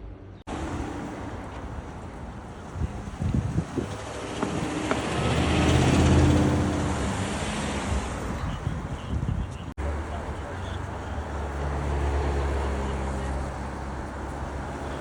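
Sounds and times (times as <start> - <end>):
vehicle driving past: 3.1 - 8.5.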